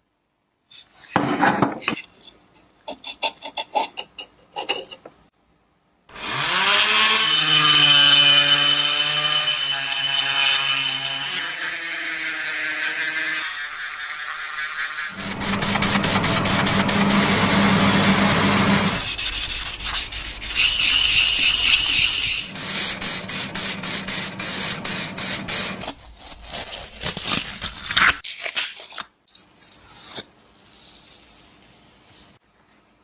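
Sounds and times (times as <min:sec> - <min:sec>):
power tool motor whining: 0:15.1 - 0:26.0.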